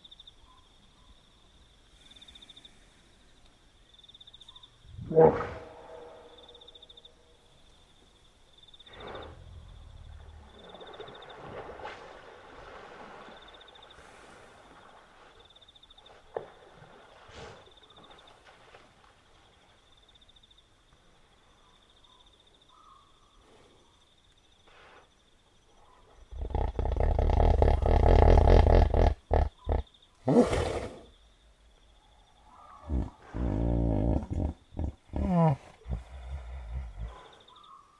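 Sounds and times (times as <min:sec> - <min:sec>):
hippo bellow: 0:05.0 - 0:06.6
hippo grunts: 0:26.3 - 0:31.1, 0:32.8 - 0:37.5.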